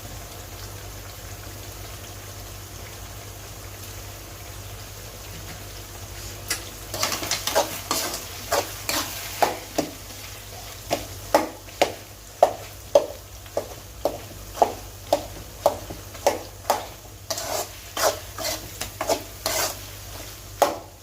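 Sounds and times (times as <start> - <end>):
faint sizzle in pan: 0.0 - 21.0
utensil scraping pan: 6.9 - 20.8.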